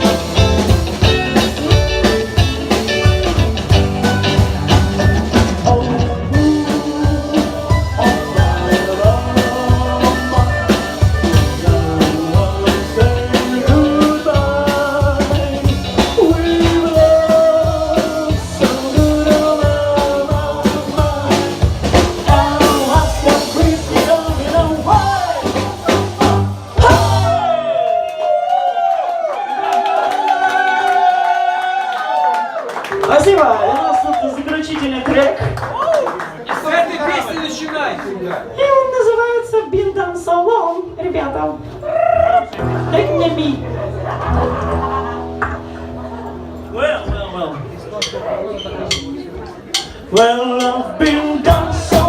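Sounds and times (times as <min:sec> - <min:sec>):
drums steady beat: 0:00.0 - 0:27.5, 0:48.9 - 0:52.0
live rock band playing: 0:00.0 - 0:27.7, 0:32.8 - 0:34.1, 0:41.6 - 0:52.0.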